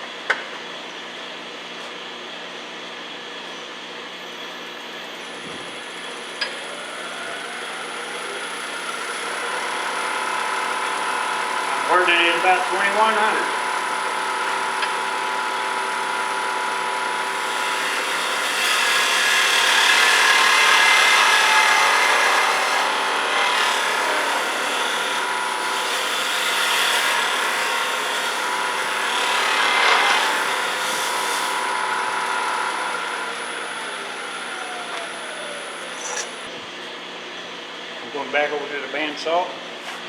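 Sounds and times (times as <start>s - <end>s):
wood lathe motor whine: 0.3s - 39.8s
lathe slowing down: 5.2s - 36.4s
turning tool scraping wood: 8.8s - 36.5s.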